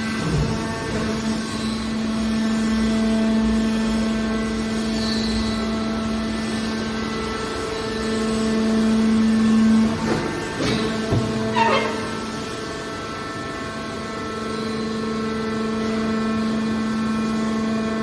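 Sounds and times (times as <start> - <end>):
baler machine hum: 5.7 - 13.4.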